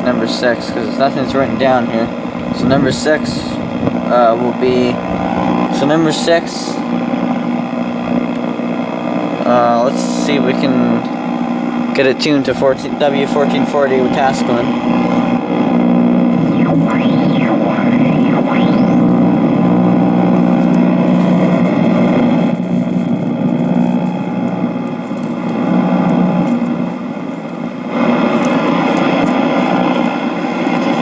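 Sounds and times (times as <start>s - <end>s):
radio hum: 0.0s - 26.9s
radio static and hiss: 0.0s - 26.9s
radio tuning whistles: 0.4s - 8.8s, 9.6s - 21.5s.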